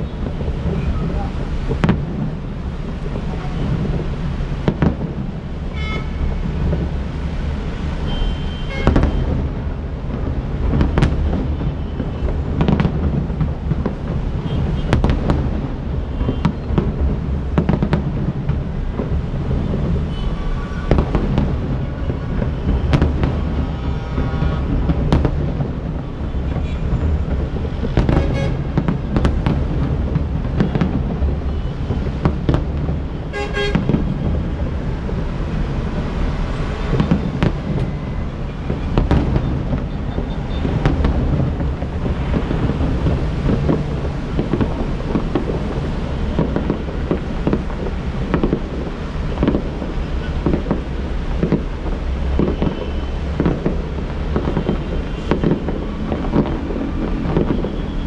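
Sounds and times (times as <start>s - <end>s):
city traffic rumble: 0.0s - 58.0s
fireworks bangs and pops: 0.0s - 58.0s
car horn: 5.7s - 6.4s, 8.0s - 9.4s, 14.4s - 15.0s, 20.0s - 24.9s, 28.0s - 28.7s, 33.2s - 34.0s, 52.4s - 53.3s.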